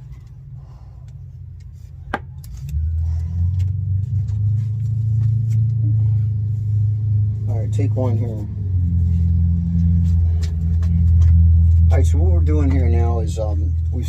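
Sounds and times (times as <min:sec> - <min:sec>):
low engine-like drone: 0:00.0 - 0:14.0.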